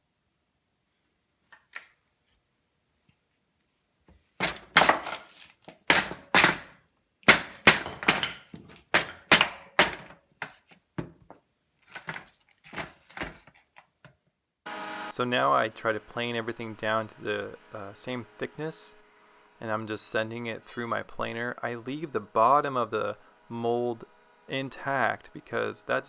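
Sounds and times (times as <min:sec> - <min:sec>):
sharp knocks and cracks: 0:04.4 - 0:11.2.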